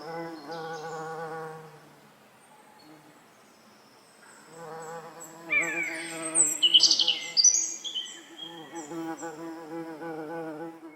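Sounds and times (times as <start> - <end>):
birds chirping and whistling: 5.5 - 8.9.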